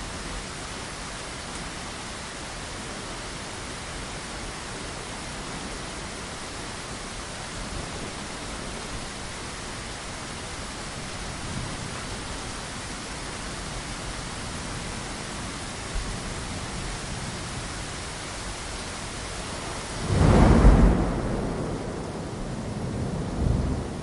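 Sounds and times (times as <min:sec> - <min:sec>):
heavy rain hissing: 0:00.0 - 0:24.0
thunder clap rumbling: 0:20.0 - 0:24.0.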